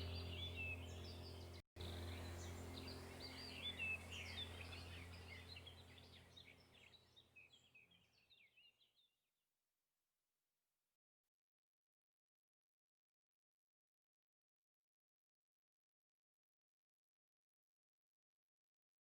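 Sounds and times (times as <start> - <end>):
low steady hum: 0.0 - 7.6
small birds chirping and trilling: 0.0 - 9.1.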